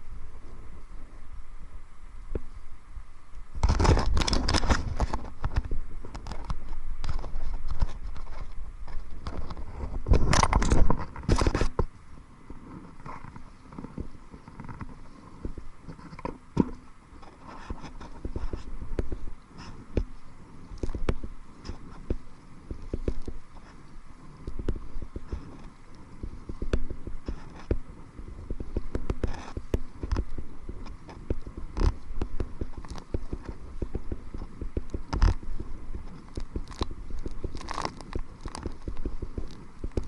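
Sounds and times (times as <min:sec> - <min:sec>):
wind rumble on microphone: 0:00.0 - 0:40.0
paddle strokes splashing: 0:11.3 - 0:40.0.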